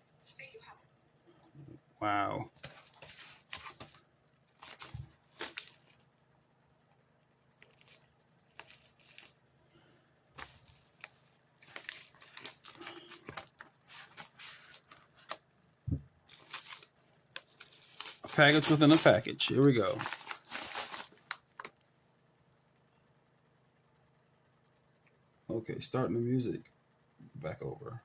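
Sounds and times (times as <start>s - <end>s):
package tearing and crinkling: 2.6s - 6.1s, 7.6s - 9.4s, 10.4s - 15.4s, 16.3s - 21.8s.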